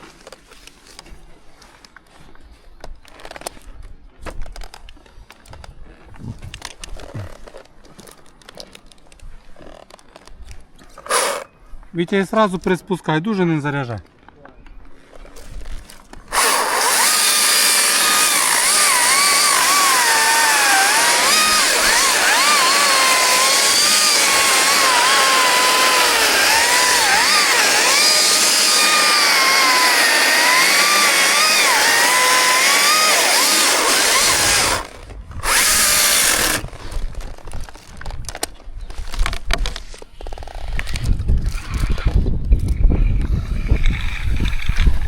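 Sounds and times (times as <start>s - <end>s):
chainsaw cutting wood: 11.0s - 11.5s, 16.2s - 37.7s.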